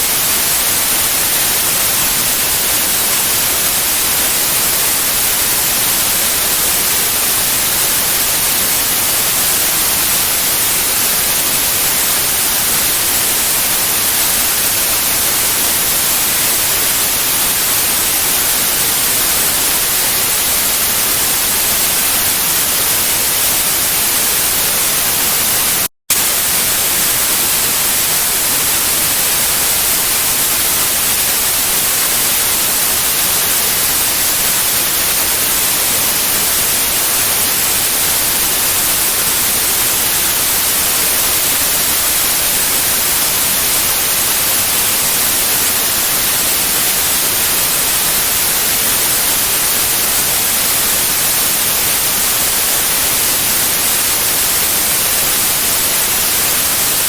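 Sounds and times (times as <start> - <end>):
white noise hiss: 0.0 - 57.0.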